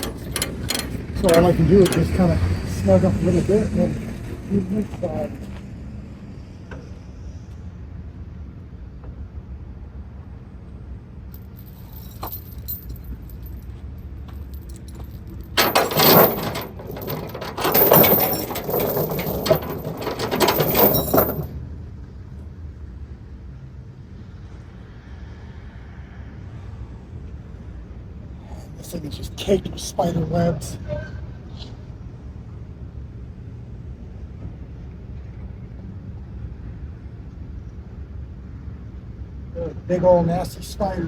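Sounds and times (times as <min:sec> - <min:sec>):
steel chain rattling and clanking: 0:00.0 - 0:03.0, 0:11.4 - 0:13.7, 0:14.3 - 0:21.6.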